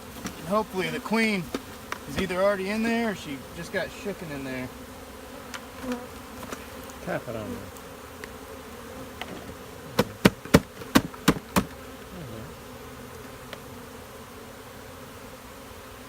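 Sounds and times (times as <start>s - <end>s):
bee swarm buzzing: 0.0s - 16.0s
trap knocking on hive box: 0.1s - 3.0s, 9.1s - 12.1s.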